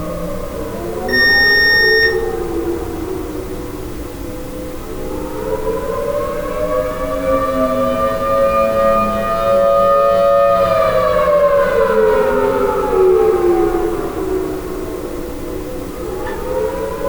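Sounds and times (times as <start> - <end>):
warning siren wailing: 1.1 - 3.0.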